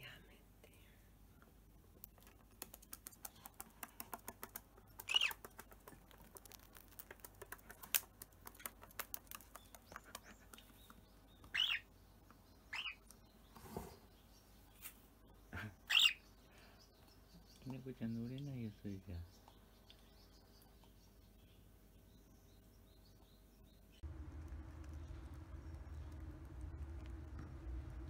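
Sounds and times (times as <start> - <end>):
cockatiel chirping: 5.0 - 5.6, 9.5 - 11.9, 12.7 - 13.0, 15.9 - 16.2.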